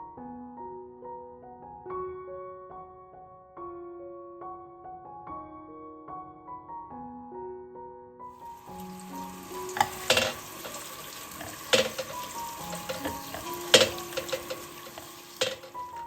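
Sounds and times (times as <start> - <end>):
soft piano music: 0.0 - 16.0
food sizzling in a frying pan: 8.4 - 16.0
utensil clicking against pan: 9.1 - 16.0.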